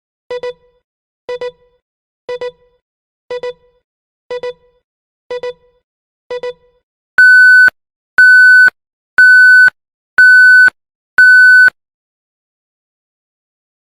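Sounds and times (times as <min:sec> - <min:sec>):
loud high beeps: 0:07.2 - 0:11.7
timer ticks: 0:07.2 - 0:11.7.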